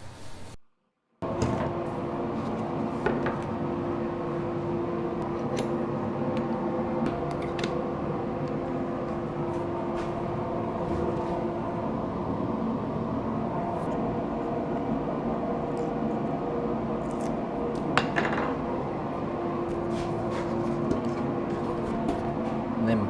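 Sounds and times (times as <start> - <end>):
dust extractor humming: 1.2 - 23.0
woodshop machinery running: 1.2 - 23.0
wood being handled: 17.0 - 22.7.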